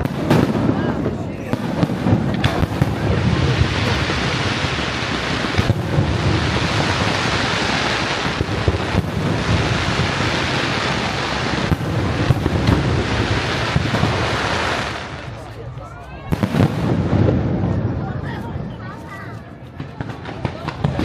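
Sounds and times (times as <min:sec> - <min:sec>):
sharp firework cracks: 0:00.0 - 0:15.5, 0:16.2 - 0:18.0
fireworks bursting: 0:00.0 - 0:21.0.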